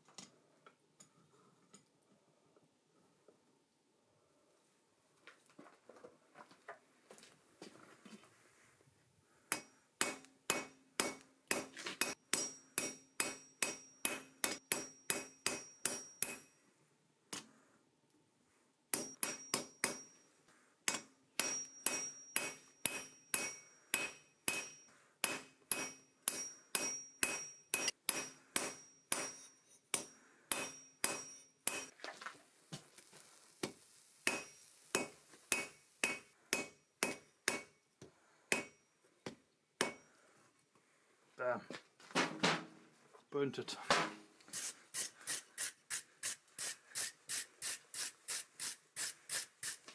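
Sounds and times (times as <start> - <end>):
hammer striking steel on anvil: 9.5 - 16.6, 18.9 - 20.2, 20.8 - 31.9, 34.2 - 37.8, 38.5 - 38.9, 39.8 - 40.1.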